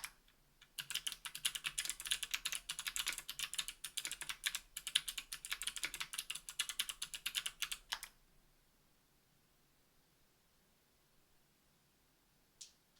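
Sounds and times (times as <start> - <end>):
clicky mechanical keyboard typing: 0.0 - 8.1.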